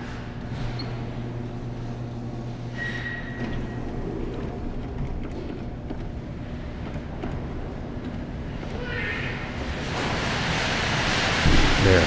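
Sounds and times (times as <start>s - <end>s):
low machine hum: 0.0s - 12.0s.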